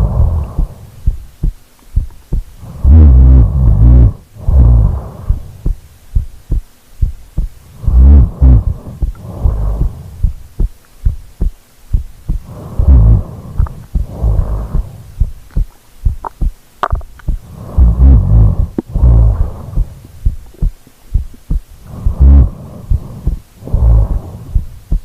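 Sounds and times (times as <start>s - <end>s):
deep breaths with snore: 0.0s - 1.2s, 2.6s - 5.8s, 7.7s - 10.4s, 12.3s - 15.3s, 17.3s - 20.8s, 21.8s - 25.0s
heartbeat thumps: 0.0s - 25.0s.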